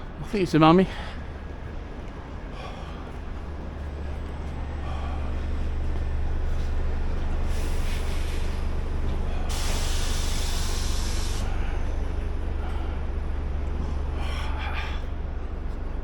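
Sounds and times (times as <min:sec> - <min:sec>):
steady low rumble: 0:00.0 - 0:16.0
loud hiss: 0:09.4 - 0:11.5.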